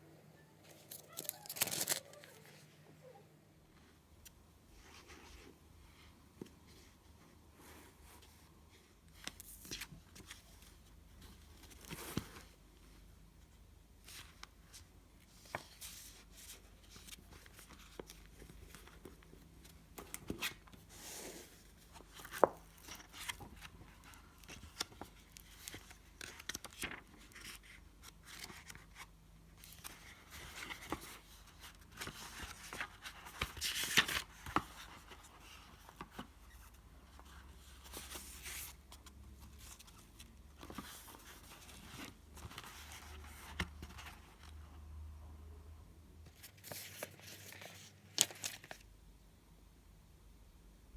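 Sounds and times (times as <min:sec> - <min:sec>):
paper pages rustling: 0:00.6 - 0:02.6, 0:14.0 - 0:44.5, 0:46.3 - 0:48.8.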